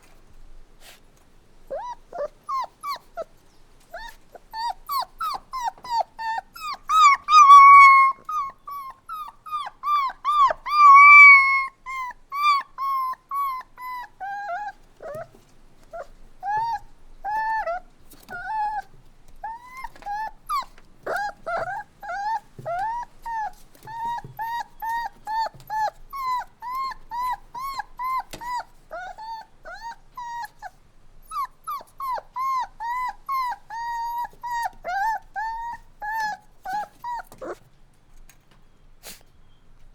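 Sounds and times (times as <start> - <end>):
puppies whimpering and crying: 1.7 - 37.6.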